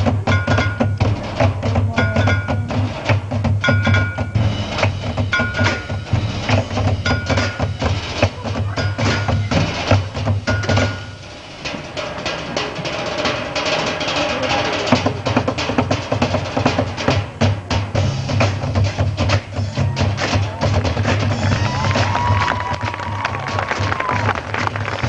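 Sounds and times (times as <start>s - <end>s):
ringing mallet percussion notes: 0.0s - 3.0s, 3.6s - 11.3s
wood-block-like strikes: 0.0s - 23.6s.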